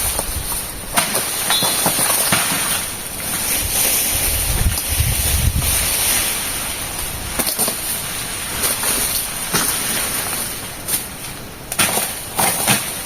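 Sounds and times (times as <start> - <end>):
wind rumble on microphone: 0.0 - 0.9, 3.0 - 9.6
rustle of leaves and fronds: 0.0 - 13.0.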